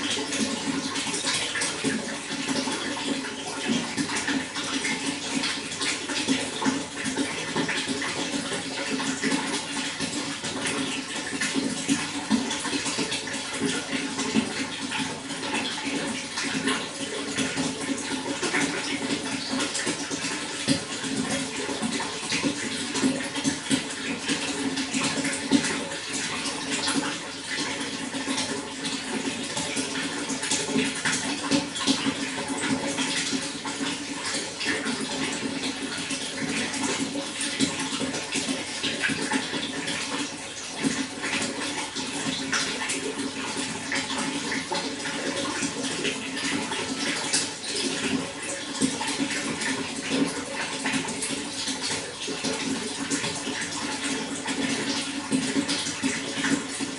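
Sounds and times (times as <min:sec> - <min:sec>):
running water with small splashes: 0:00.0 - 0:56.9.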